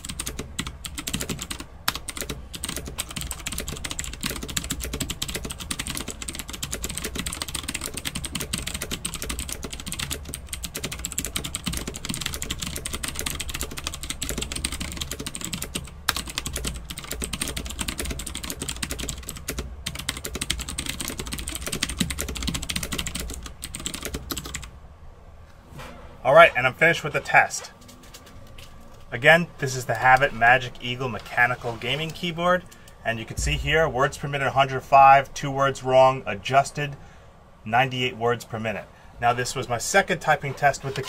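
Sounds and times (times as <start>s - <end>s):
mechanical keyboard clicking: 0.0s - 24.7s.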